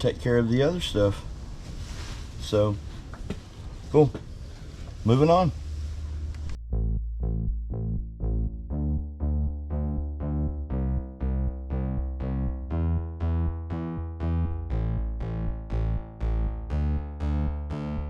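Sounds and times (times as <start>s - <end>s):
synthesizer notes repeating: 6.6s - 18.0s.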